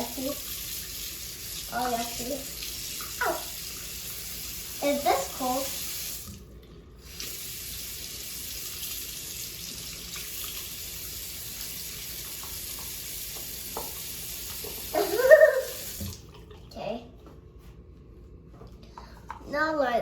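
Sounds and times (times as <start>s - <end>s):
tap running into sink: 12.2s - 15.0s, 15.8s - 16.2s.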